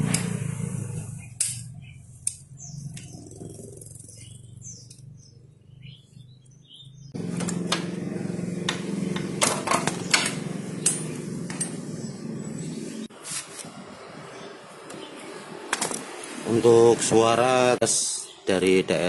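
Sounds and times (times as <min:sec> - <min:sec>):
motorcycle engine running: 0:00.0 - 0:13.1.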